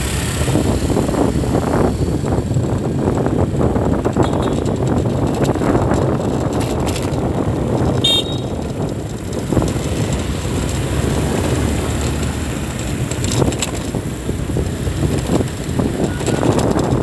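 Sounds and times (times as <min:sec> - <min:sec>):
traffic rumbling past: 0:00.0 - 0:17.0
car horn toot: 0:04.2 - 0:04.9, 0:08.0 - 0:08.7.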